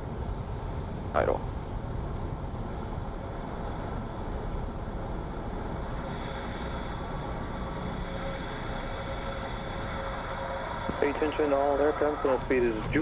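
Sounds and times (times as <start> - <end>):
cockpit airflow noise: 0.0 - 13.0
piston engine idling: 4.7 - 13.0.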